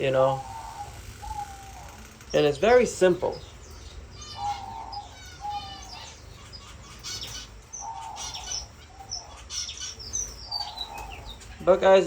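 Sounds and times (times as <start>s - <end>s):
finches calling: 0.0s - 12.0s.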